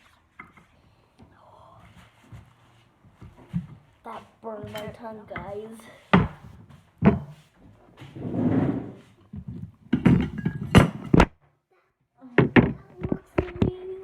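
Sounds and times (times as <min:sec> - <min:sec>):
tableware knocking on table: 0:07.0 - 0:07.4, 0:09.9 - 0:11.3.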